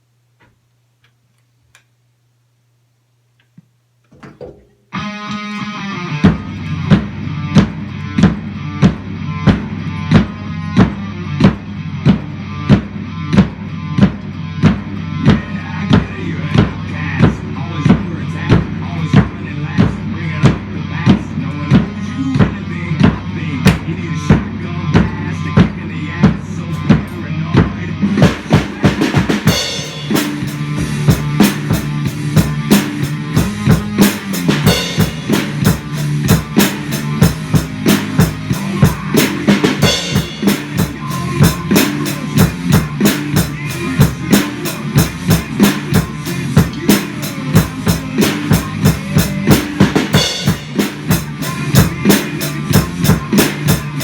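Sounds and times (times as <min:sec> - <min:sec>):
hard rock music: 0:04.9 - 0:54.0
kick and snare drum strikes: 0:23.7 - 0:23.9.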